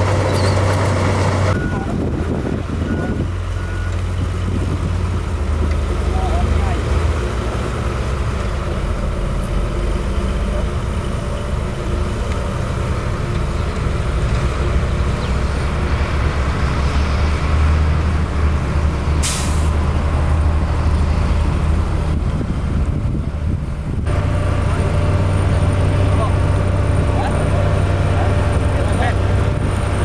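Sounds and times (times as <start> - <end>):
heavy diesel machinery running: 0.0 - 30.0
air brake hiss: 19.2 - 19.8.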